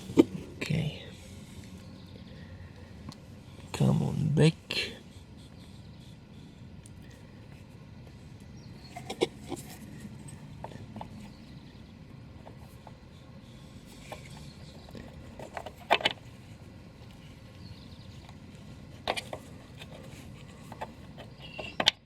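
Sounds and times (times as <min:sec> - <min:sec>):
low steady hum: 0:00.0 - 0:22.0
tools and parts clicking: 0:19.0 - 0:22.0.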